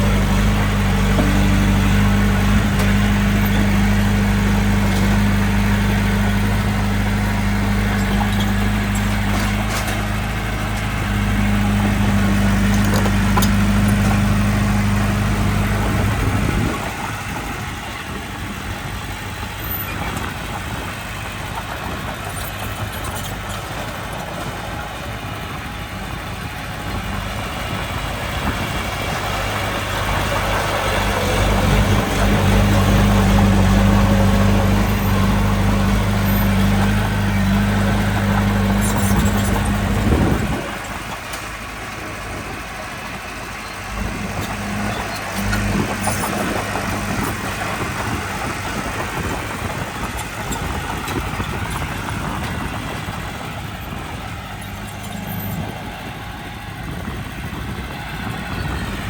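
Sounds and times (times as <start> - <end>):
diesel engine droning: 0.0 - 59.0.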